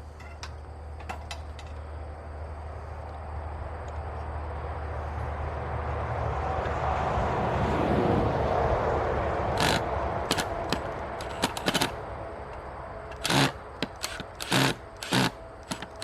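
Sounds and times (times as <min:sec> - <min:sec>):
highway traffic passing: 0:00.0 - 0:16.0
screwdriver bit slipping on screws: 0:09.6 - 0:12.0, 0:13.2 - 0:16.0.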